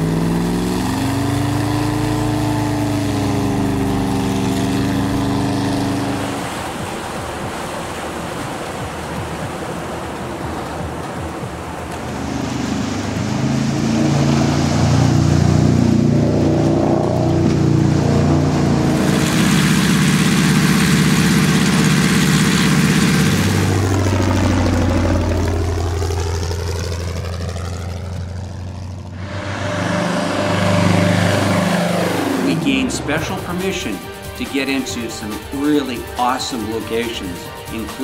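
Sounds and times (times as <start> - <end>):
vehicle engines: 0.0 - 38.0
vehicle passing with phasing hiss: 0.0 - 38.0.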